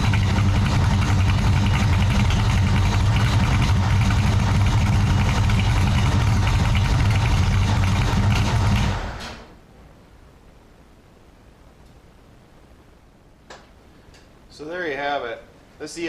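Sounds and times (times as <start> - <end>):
car engine idling: 0.0 - 9.5.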